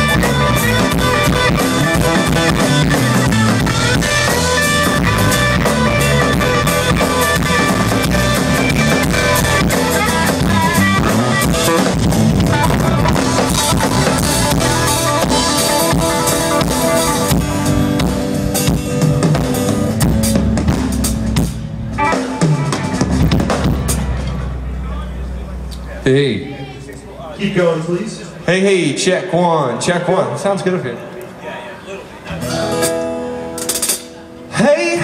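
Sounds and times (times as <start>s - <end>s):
drum hits: 0.0s - 25.8s
live band playing drums and guitar: 0.0s - 28.5s, 32.1s - 35.0s.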